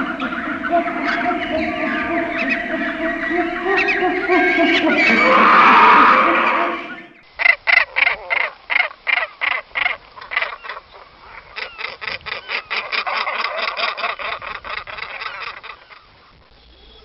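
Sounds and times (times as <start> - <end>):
faint whistled bird notes: 0.0 - 7.3.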